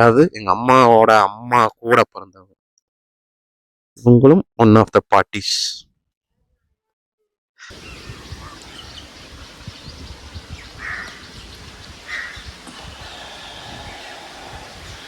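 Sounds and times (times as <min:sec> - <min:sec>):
short bird calls: 0:07.6 - 0:15.0.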